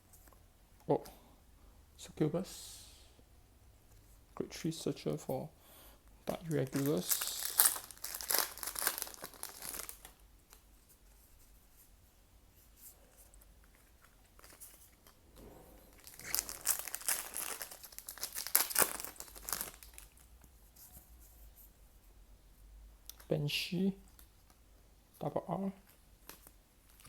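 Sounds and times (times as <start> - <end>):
foil pack crinkling and tearing: 6.4 - 10.2, 15.9 - 20.2.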